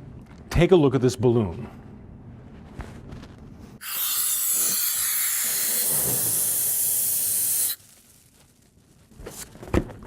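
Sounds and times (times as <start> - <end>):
air hissing: 3.8 - 7.8.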